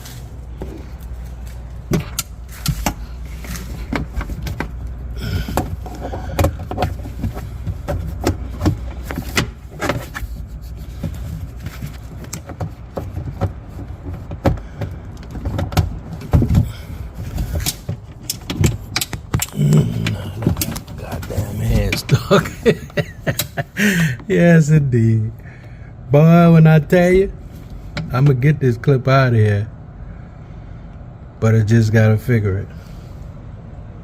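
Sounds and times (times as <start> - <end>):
hand tools clicking and knocking: 1.8 - 24.2.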